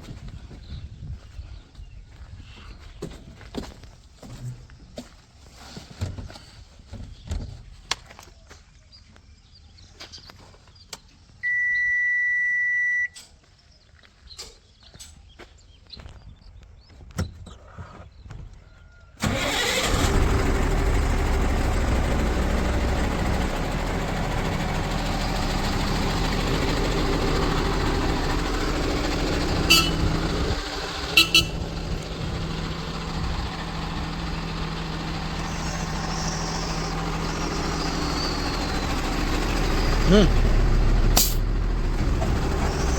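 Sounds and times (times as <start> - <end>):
heavy diesel engine running: 19.2 - 42.9.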